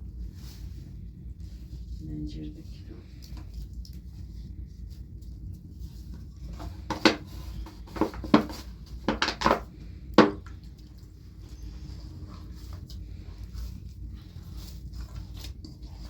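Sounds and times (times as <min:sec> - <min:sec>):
low background rumble: 0:00.0 - 0:16.0
sharp knocks and clatters: 0:06.6 - 0:10.6.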